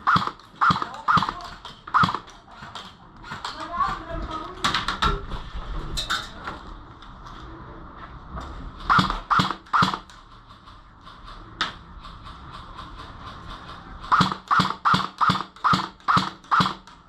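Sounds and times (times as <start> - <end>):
airsoft gun shots: 0.0 - 3.5, 8.9 - 10.1, 14.1 - 16.9.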